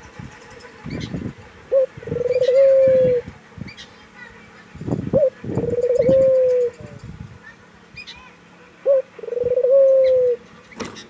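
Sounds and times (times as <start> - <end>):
dove cooing: 0.9 - 3.3, 5.1 - 7.0, 8.8 - 10.4.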